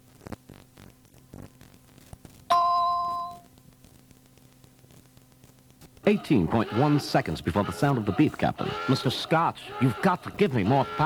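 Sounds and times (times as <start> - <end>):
faint tape hum: 0.0 - 11.0
two-tone bell ding: 2.5 - 3.4.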